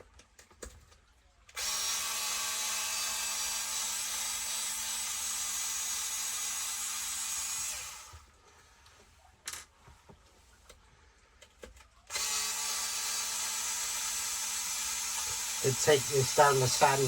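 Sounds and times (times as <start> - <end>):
electric power tool running: 12.1 - 17.0.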